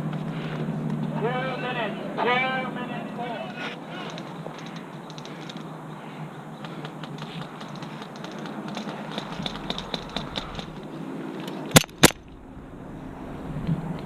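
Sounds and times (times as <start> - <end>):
light clicks and ticks: 4.0 - 5.7.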